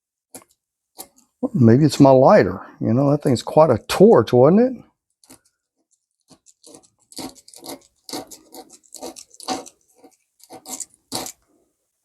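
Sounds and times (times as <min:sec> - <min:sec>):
small hard objects clicking and scraping: 0:00.2 - 0:01.4, 0:04.9 - 0:11.6.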